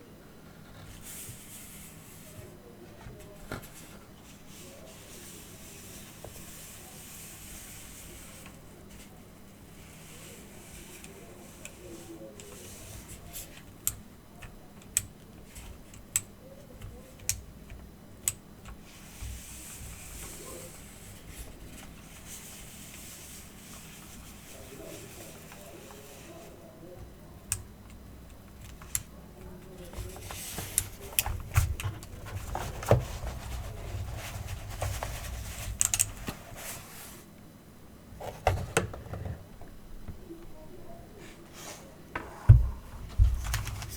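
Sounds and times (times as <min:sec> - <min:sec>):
handling rustle: 0:28.8 - 0:37.3.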